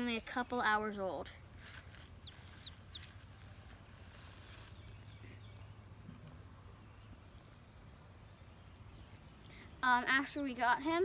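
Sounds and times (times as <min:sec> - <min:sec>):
duckling peeping: 0:01.9 - 0:05.7.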